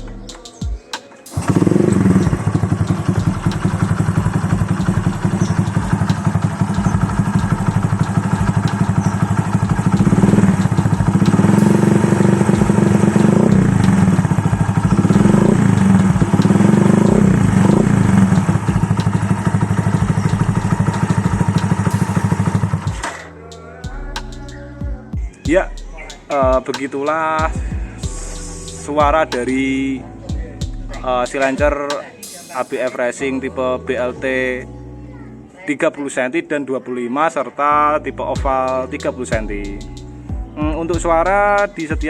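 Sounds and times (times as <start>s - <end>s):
scooter engine idling and revving: 1.3s - 23.2s.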